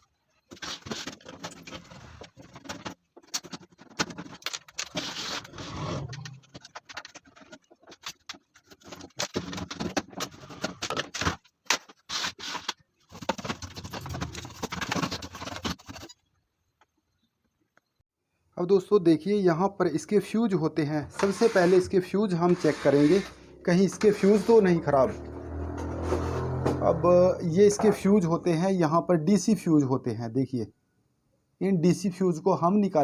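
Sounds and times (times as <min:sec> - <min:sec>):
cover scraping and rattling: 0:00.5 - 0:16.2, 0:22.5 - 0:28.4.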